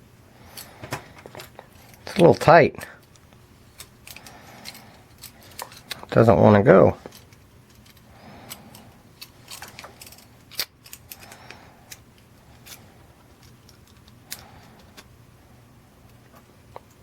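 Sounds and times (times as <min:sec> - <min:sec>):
lock pick clicking and scraping: 0:03.0 - 0:06.1, 0:07.0 - 0:12.0.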